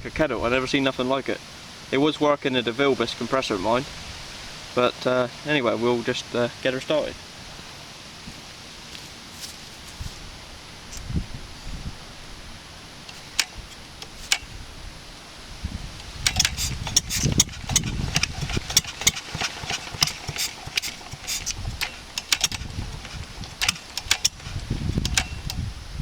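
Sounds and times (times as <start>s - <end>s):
stationary engine starting and firing: 16.0s - 25.7s.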